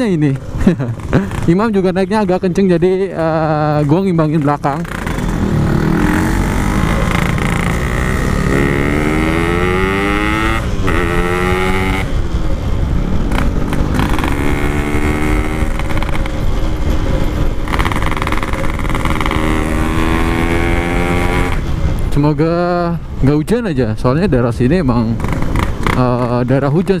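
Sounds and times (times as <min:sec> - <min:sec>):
two-stroke motorcycle revving: 0:00.0 - 0:22.1, 0:25.0 - 0:26.8.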